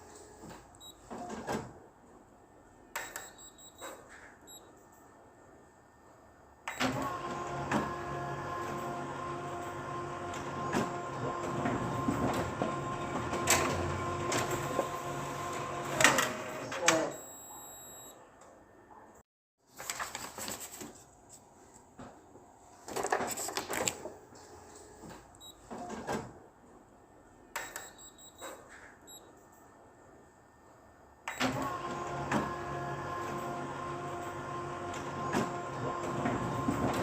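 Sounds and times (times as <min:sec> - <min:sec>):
photocopier motor humming: 0:06.8 - 0:17.1, 0:31.4 - 0:37.0.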